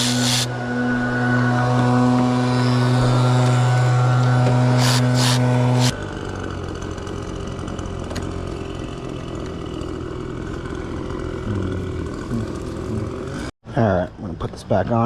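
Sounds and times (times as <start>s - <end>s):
low engine-like hum: 0.0s - 6.6s, 10.6s - 13.5s
loud low humming tone: 0.0s - 13.5s.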